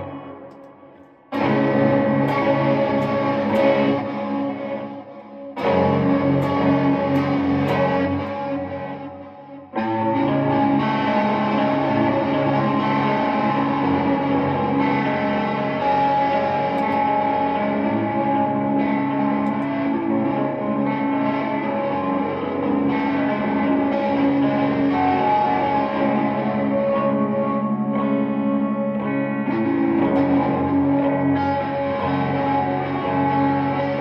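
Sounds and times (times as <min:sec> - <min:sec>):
electric guitar with effects: 0:00.0 - 0:34.0.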